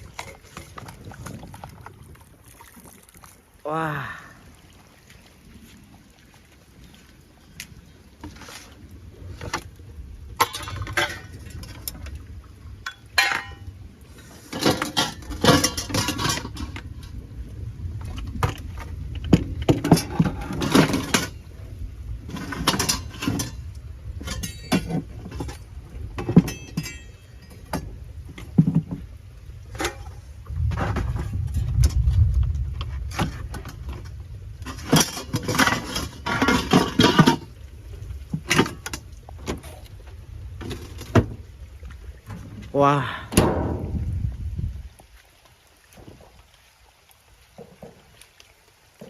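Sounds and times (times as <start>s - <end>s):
metal pots and utensils clattering: 10.4s - 11.6s, 12.9s - 13.6s, 14.5s - 16.8s, 19.7s - 21.4s, 22.3s - 23.6s, 24.2s - 25.6s, 26.2s - 27.9s, 29.7s - 30.2s, 34.6s - 37.5s
steady low rumble: 29.1s - 34.9s, 43.2s - 45.1s.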